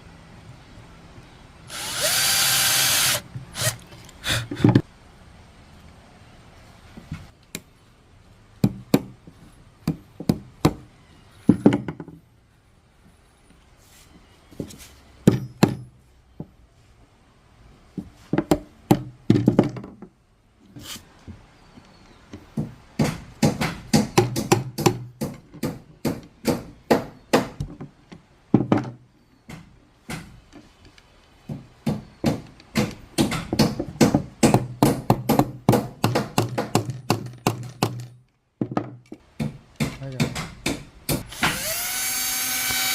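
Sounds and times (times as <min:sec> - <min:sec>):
sharp knocks on hard surface: 0:22.6 - 0:27.7, 0:31.5 - 0:41.2.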